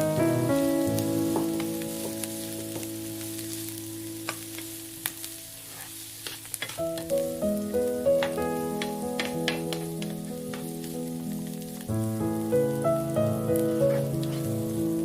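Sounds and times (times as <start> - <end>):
background music: 0.0 - 5.7, 6.8 - 15.0
hot oil sizzling and crackling: 0.0 - 15.0.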